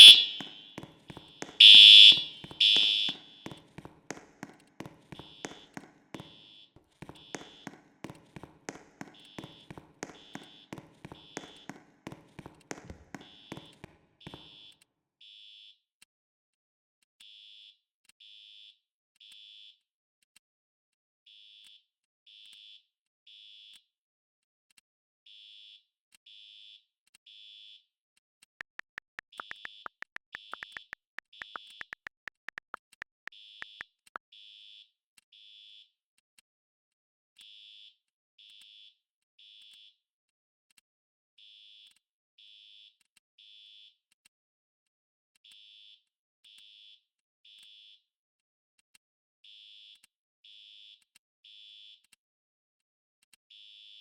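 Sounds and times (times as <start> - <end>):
fire alarm beeping: 0.0 - 3.4
knocks: 0.0 - 6.4, 7.0 - 14.4
rapid sharp clicks: 28.6 - 33.8.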